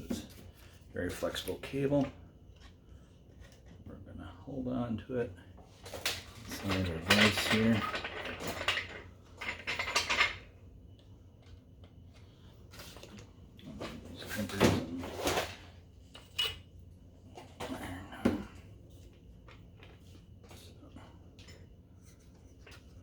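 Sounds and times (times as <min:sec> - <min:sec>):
metal tools clinking: 0:06.3 - 0:10.5.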